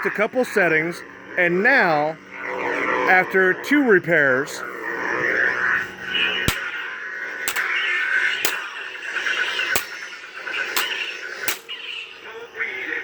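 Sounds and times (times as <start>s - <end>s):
sharp clicks: 6.5s - 6.7s, 7.5s - 7.8s, 8.5s - 8.7s, 9.8s - 10.0s, 10.8s - 11.7s.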